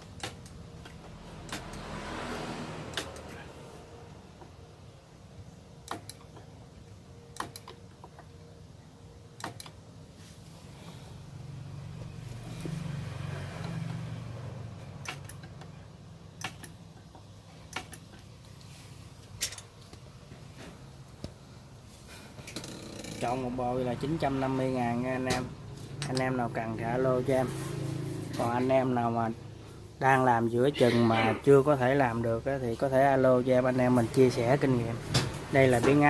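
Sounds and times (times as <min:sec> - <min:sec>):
sharp clicks and knocks: 0:00.0 - 0:02.0, 0:02.9 - 0:03.3, 0:05.8 - 0:06.5, 0:07.3 - 0:08.4, 0:09.4 - 0:09.8, 0:15.0 - 0:15.8, 0:16.4 - 0:18.3.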